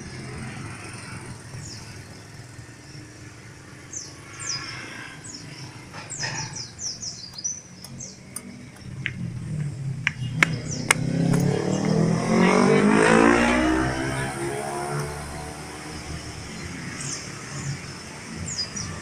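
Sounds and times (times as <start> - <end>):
small birds chirping: 0.0 - 19.0
steady low rumble: 8.0 - 13.5.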